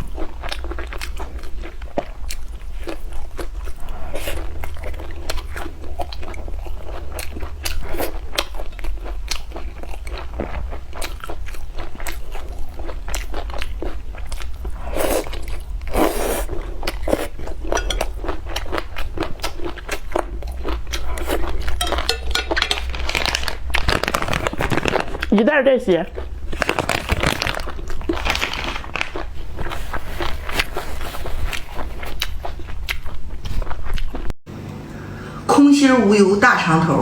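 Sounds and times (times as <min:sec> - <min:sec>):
person crunching food: 0:00.0 - 0:25.4, 0:26.0 - 0:34.3
steady low hum: 0:34.5 - 0:37.0.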